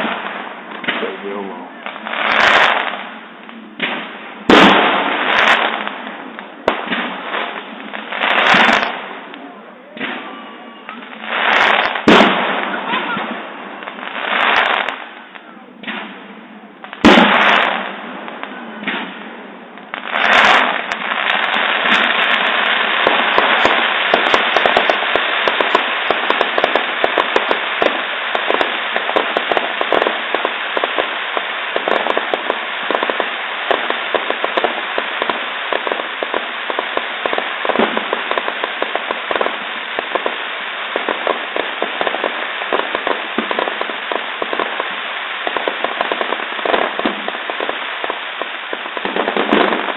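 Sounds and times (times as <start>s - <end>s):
crackling of small firework pops: 0.0s - 16.2s, 16.8s - 19.2s, 19.8s - 49.9s
firework bangs: 0.0s - 49.9s.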